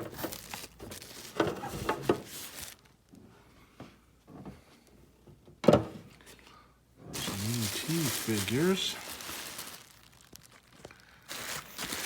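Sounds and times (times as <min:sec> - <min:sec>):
items unpacked from a box: 0:00.0 - 0:02.9, 0:07.2 - 0:12.0.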